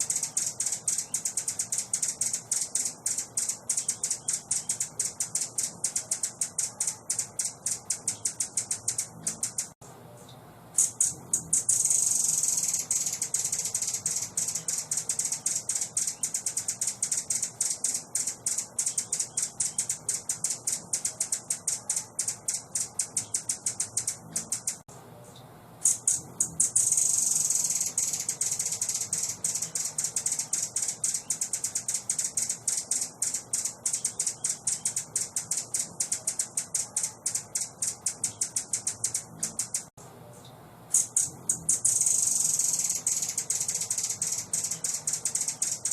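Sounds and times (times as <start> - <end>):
songbird chattering trill: 0.0 - 9.8, 10.8 - 24.8, 25.8 - 39.9, 41.0 - 45.9.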